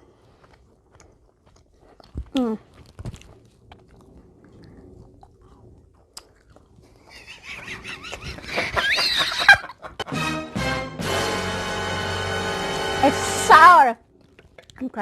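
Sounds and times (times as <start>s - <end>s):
chewing gummy sweet: 0.0s - 7.8s, 14.0s - 15.0s
music: 10.0s - 13.6s.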